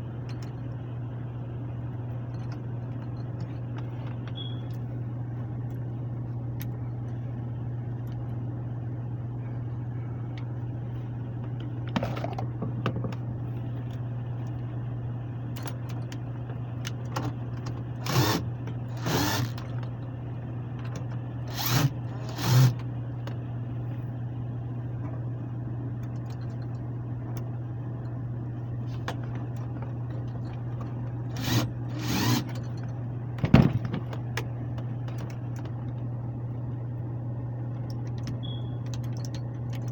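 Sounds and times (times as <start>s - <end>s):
air handler blower hum: 0.0s - 39.9s.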